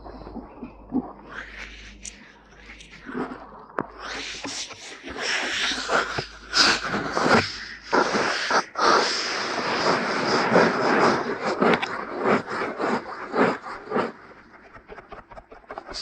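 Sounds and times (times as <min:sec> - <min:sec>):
scratching against microphone: 0:05.6 - 0:16.0.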